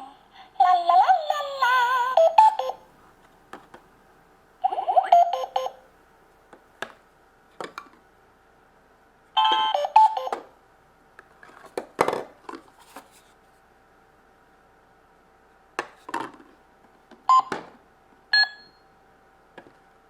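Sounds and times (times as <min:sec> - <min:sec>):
toy cash register beep jingles: 0:05.1 - 0:05.8, 0:09.4 - 0:10.4
plastic clatter: 0:11.4 - 0:13.2.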